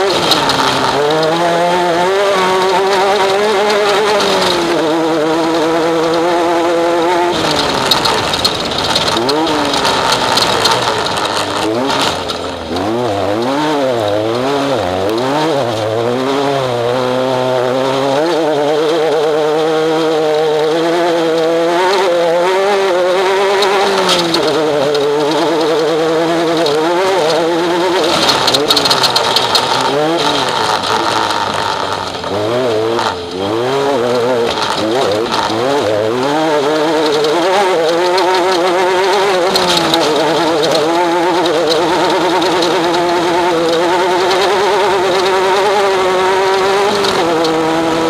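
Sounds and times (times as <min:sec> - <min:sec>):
race vehicle engine revving: 0:00.0 - 0:48.0
steady rushing noise: 0:00.0 - 0:48.0.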